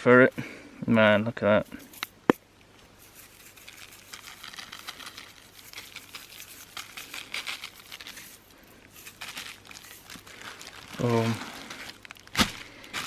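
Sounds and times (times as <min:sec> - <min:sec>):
paper wrapping crinkling: 0:03.0 - 0:13.0.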